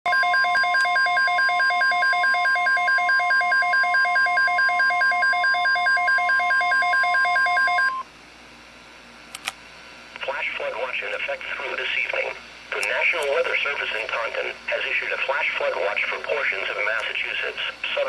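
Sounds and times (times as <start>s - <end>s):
rapid pulsing beeps: 0.1s - 8.0s.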